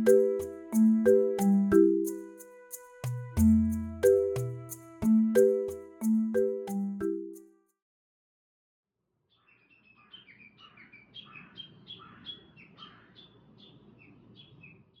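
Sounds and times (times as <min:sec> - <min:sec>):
outdoor background noise: 0:09.2 - 0:15.0
small bird chirping: 0:09.3 - 0:15.0.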